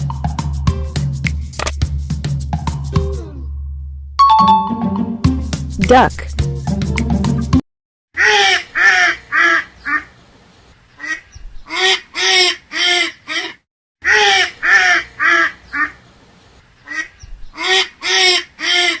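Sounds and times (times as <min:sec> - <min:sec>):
duck quacking: 0:08.2 - 0:10.1, 0:11.0 - 0:16.0, 0:16.9 - 0:19.0.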